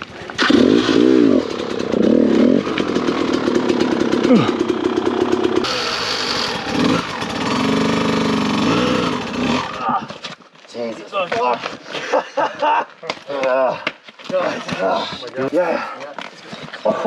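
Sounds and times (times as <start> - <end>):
dirt bike engine revving: 0.0 - 10.1.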